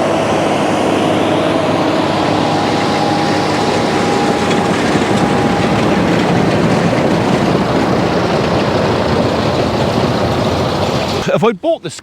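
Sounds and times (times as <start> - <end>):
tractor and hay baler running: 0.0 - 12.0.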